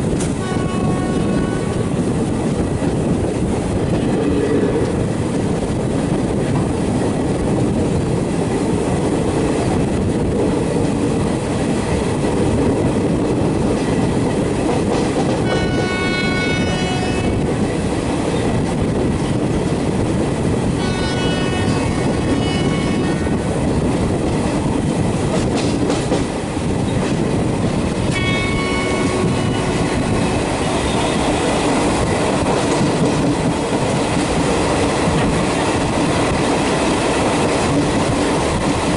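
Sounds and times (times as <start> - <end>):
train wheels clattering on rails: 0.0 - 38.9
train horn blasts: 0.3 - 2.1, 15.4 - 17.5, 20.8 - 23.3, 28.1 - 30.0.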